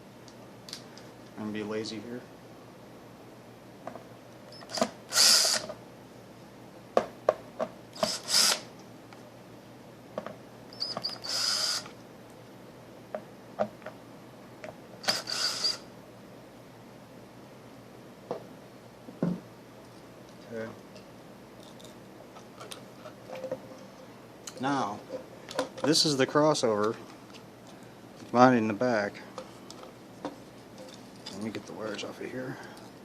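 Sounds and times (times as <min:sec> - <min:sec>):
power drill driver whirring: 0:04.5 - 0:05.8, 0:08.0 - 0:08.7, 0:10.7 - 0:12.0, 0:15.0 - 0:15.9.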